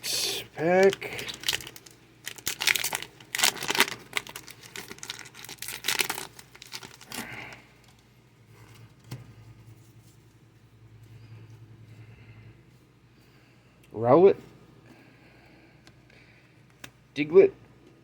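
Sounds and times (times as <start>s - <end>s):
foil wrapper tearing and crinkling: 0.7s - 8.0s.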